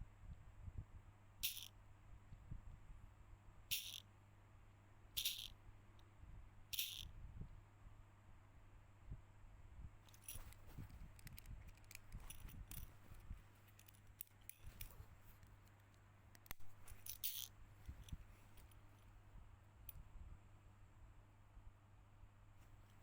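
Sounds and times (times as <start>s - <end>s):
low electrical hum: 0.0s - 23.0s
small parts and tools clicking: 1.4s - 1.7s, 3.7s - 4.0s, 5.2s - 5.6s, 6.7s - 7.1s, 10.1s - 19.1s.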